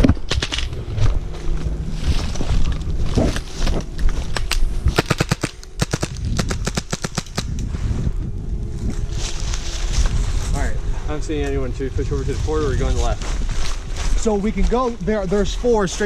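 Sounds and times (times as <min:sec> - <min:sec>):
wind rumble on microphone: 0:00.0 - 0:16.0
airsoft guns firing: 0:05.0 - 0:07.5.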